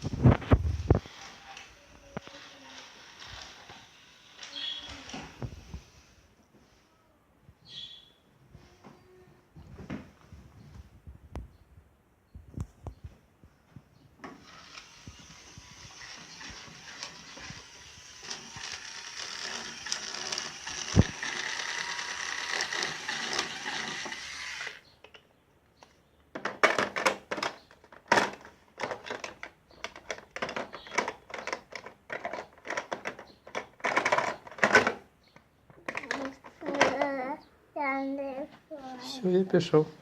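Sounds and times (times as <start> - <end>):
clicks and clacks of tools and parts: 25.0 - 37.1.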